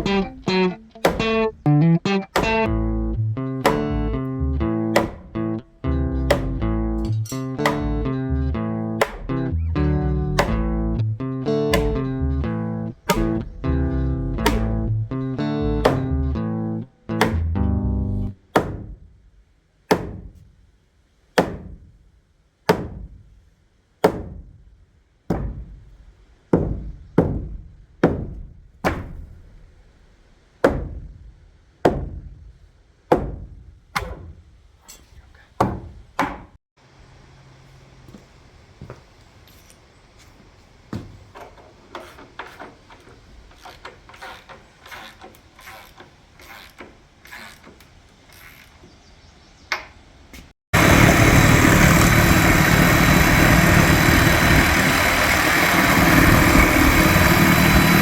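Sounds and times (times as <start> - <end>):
heavy hammer blows: 4.9 - 5.4, 6.3 - 8.0, 9.0 - 9.5, 10.4 - 10.8, 11.7 - 12.2, 13.1 - 13.8, 14.4 - 15.0, 50.8 - 58.0
steady background noise: 36.8 - 48.8.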